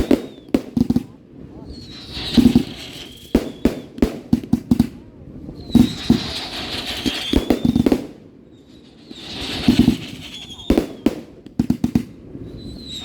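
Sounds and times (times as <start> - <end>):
high firework whistle: 0.0 - 0.6, 1.6 - 4.0, 5.5 - 11.4, 12.4 - 13.0
firework bangs: 0.0 - 13.0
rising firework hiss: 1.6 - 13.0.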